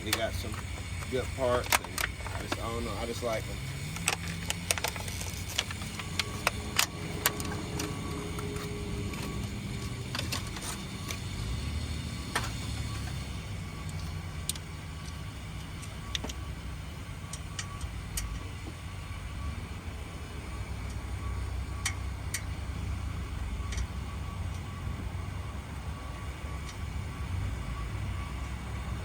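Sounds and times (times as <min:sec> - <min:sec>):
hand tools clicking on metal: 0:00.0 - 0:02.9, 0:03.9 - 0:11.3
steady low hum: 0:00.0 - 0:29.0.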